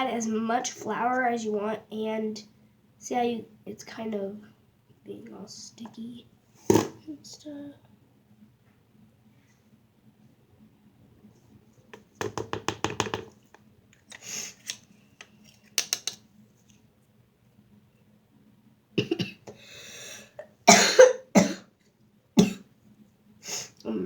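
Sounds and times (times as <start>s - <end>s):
girl coughing: 19.0s - 19.4s, 20.7s - 21.7s, 22.4s - 22.6s.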